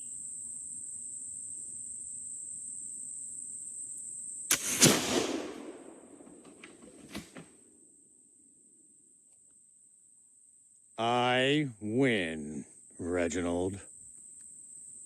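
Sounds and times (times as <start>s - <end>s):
cricket trilling: 0.0s - 7.4s, 9.5s - 15.0s
pistol gunshot: 4.5s - 7.4s.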